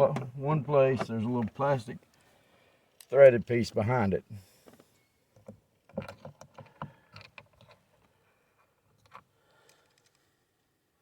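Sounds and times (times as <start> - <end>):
clicks and knocks handling plastic: 5.4 - 8.1.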